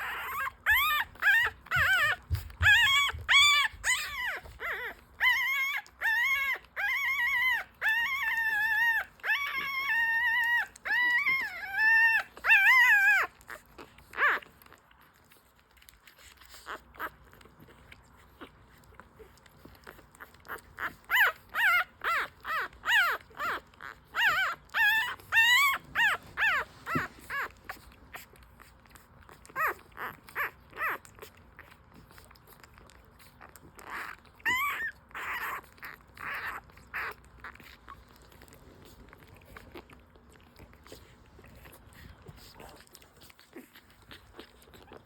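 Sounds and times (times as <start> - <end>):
puppies crying high squeals: 0.0 - 14.5, 19.7 - 28.3, 29.5 - 31.2, 33.4 - 38.0.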